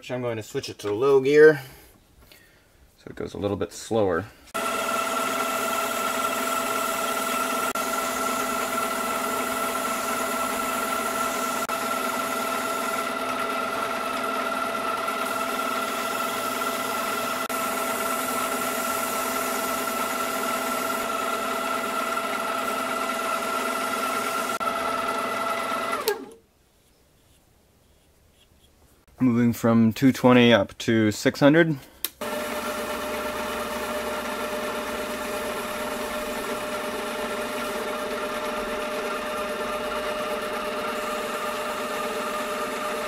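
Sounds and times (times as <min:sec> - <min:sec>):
lathe motor whine: 0:04.5 - 0:26.4, 0:32.2 - 0:43.0
lathe switching off: 0:04.5 - 0:26.4, 0:32.2 - 0:43.0
sandpaper hissing on spinning wood: 0:05.5 - 0:13.0, 0:15.2 - 0:21.0.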